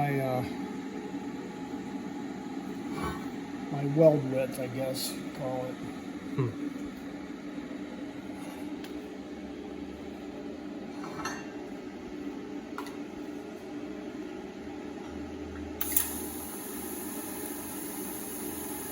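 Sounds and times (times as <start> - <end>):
welder humming: 15.8 - 18.9
welding arc crack and hiss: 15.8 - 18.9.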